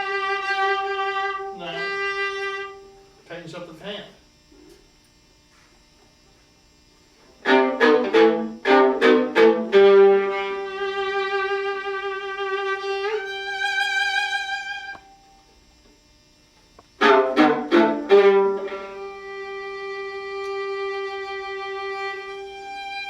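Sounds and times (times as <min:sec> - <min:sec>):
bowed viola notes: 0:00.0 - 0:03.2, 0:07.4 - 0:15.4, 0:17.0 - 0:23.0.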